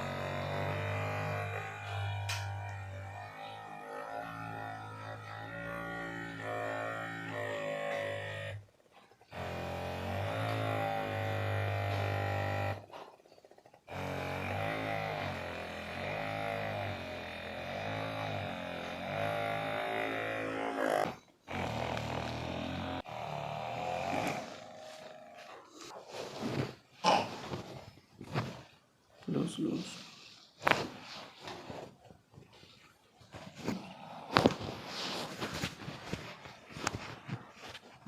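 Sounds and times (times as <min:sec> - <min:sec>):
sustained low droning notes: 0:00.0 - 0:08.6.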